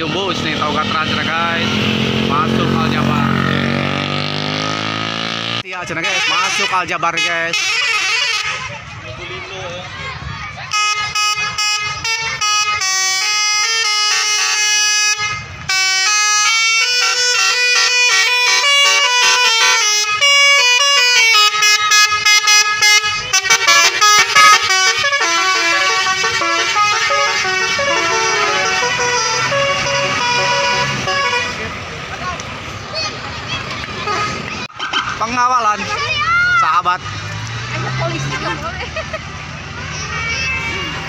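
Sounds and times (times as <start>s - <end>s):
bus musical horn playing a tune: 5.9s - 8.8s, 10.7s - 31.7s, 34.0s - 34.4s.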